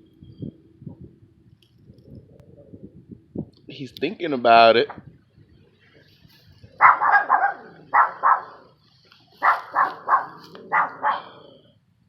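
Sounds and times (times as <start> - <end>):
animal barking calls: 6.7 - 8.8, 9.4 - 11.8.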